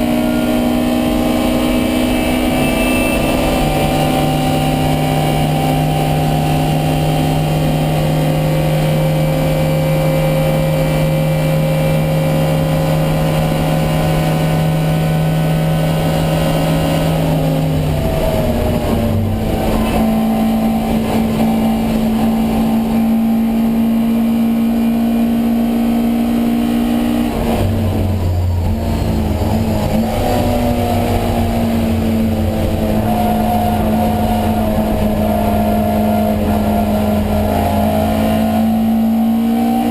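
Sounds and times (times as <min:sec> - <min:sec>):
race car engine under power: 0:00.0 - 0:39.9.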